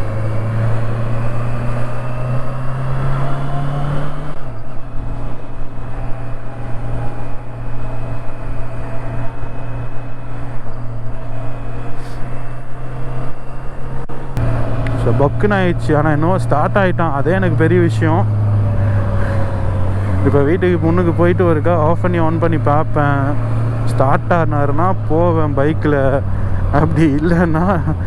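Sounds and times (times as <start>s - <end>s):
motorcycle engine running: 7.4s - 28.0s.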